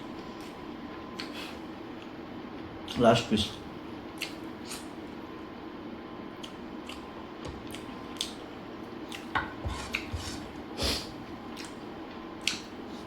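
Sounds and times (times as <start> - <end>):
chewing smacks and clicks: 11.6 - 11.8, 12.4 - 12.7.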